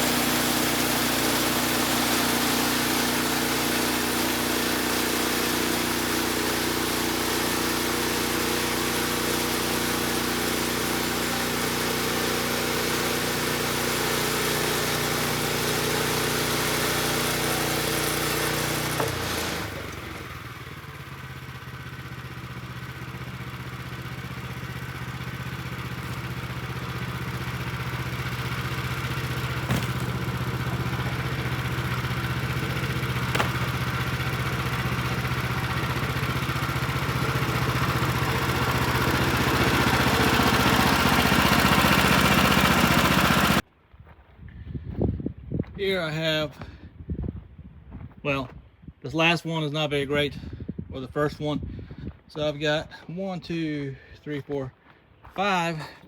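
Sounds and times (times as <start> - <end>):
bandsaw blade cutting wood: 0.0 - 20.7, 25.3 - 43.6
gas engine running: 0.0 - 43.6.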